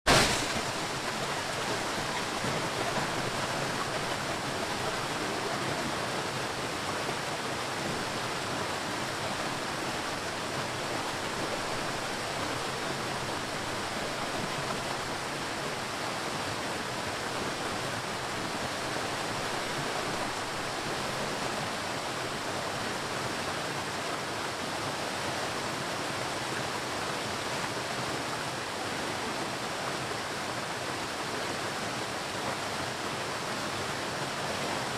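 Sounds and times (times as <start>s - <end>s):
sea surf washing: 0.1s - 22.0s.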